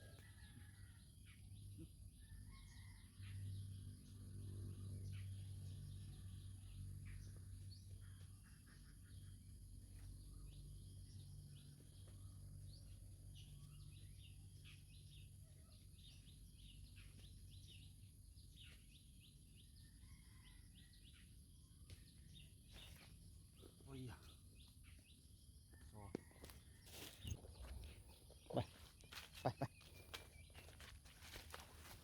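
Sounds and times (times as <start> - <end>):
faint birds chirping: 0.0 - 32.0.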